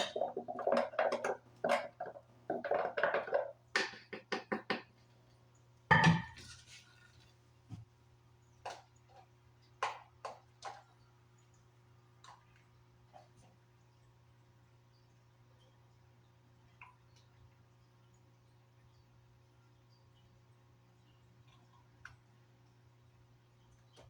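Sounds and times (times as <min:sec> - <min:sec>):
containers and utensils clicking: 0:00.0 - 0:04.9.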